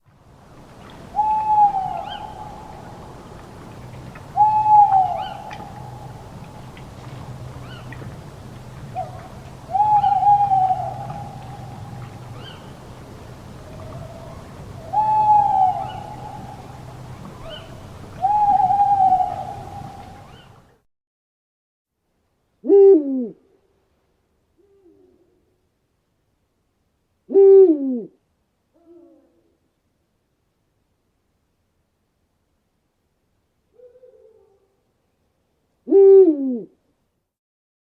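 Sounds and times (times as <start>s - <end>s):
owl hooting: 1.1s - 3.1s, 4.3s - 6.7s, 7.6s - 8.0s, 8.9s - 12.8s, 13.6s - 20.6s.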